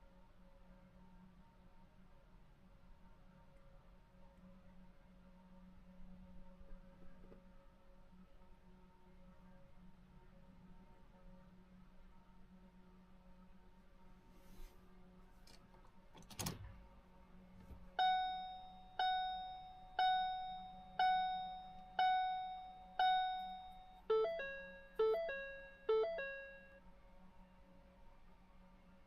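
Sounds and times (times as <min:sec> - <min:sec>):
electronic warning chime dings: 0:18.0 - 0:26.8.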